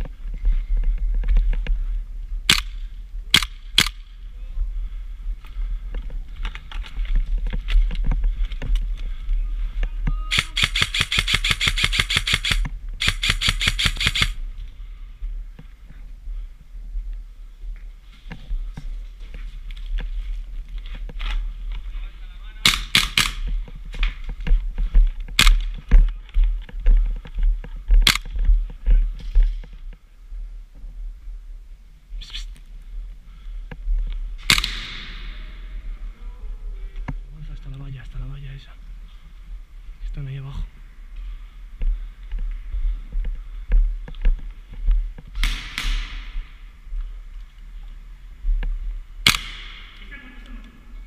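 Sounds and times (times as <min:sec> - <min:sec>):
airsoft gun shots: 0:10.3 - 0:14.4, 0:22.6 - 0:23.4, 0:34.4 - 0:35.4, 0:45.4 - 0:46.3, 0:49.2 - 0:50.0.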